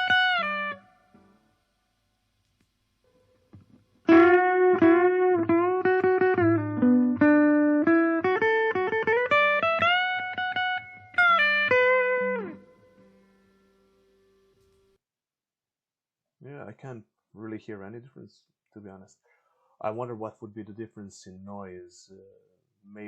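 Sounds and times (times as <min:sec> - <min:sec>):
electric guitar with string bends: 0:00.0 - 0:01.4, 0:03.1 - 0:14.9.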